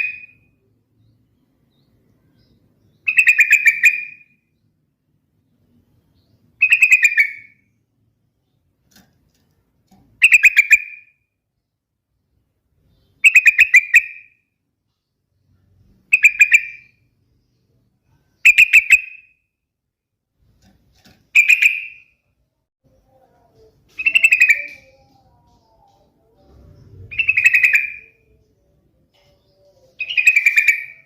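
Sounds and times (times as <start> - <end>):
bulbul singing bubbling phrases: 23.2 - 31.0.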